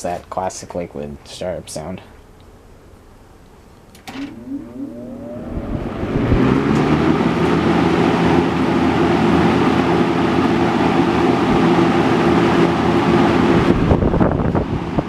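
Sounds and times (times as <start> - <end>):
box fan motor hum and air rush: 4.1 - 15.0.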